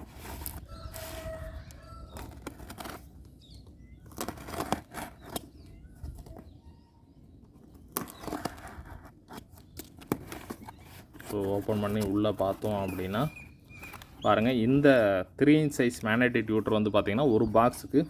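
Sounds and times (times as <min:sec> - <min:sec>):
cardboard flaps rustling: 0:07.7 - 0:14.2.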